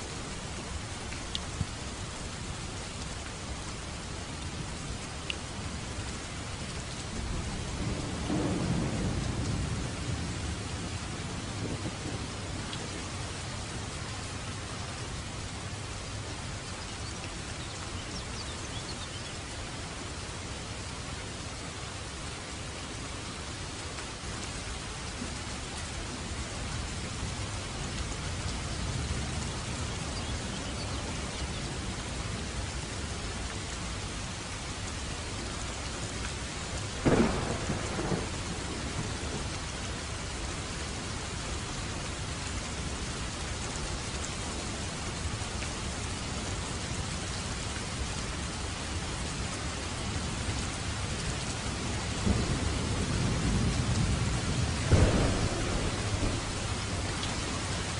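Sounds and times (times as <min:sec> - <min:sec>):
steady rain: 0:00.0 - 0:57.9
thunder rumbling: 0:07.2 - 0:13.0, 0:37.0 - 0:39.7, 0:52.1 - 0:57.9
thunderclap: 0:37.0 - 0:39.4, 0:53.2 - 0:57.0.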